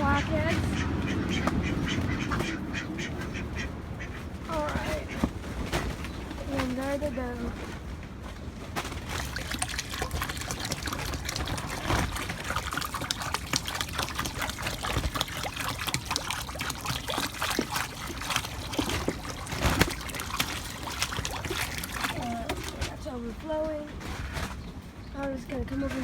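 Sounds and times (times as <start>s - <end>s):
wind rumble on microphone: 0.0s - 13.2s
water pouring into container: 8.9s - 23.1s.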